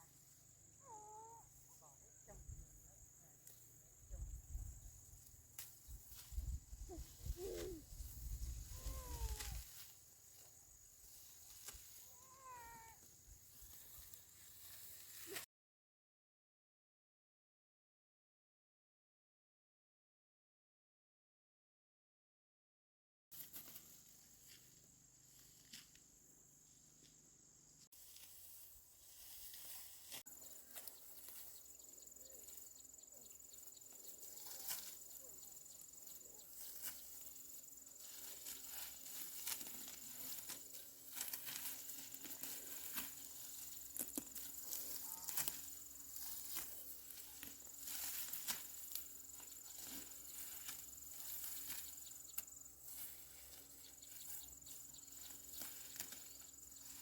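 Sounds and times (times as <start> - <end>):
insects trilling: 0.0 - 15.4, 26.2 - 57.0
rustling and crackling clicks: 38.2 - 52.5.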